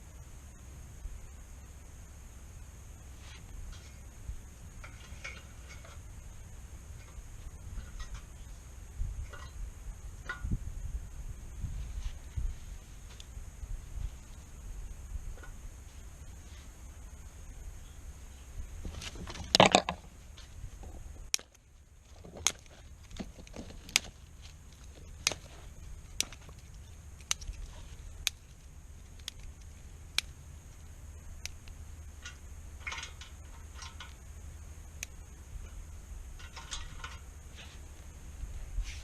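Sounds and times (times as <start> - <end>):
wood fire popping and crackling: 18.8 - 37.6.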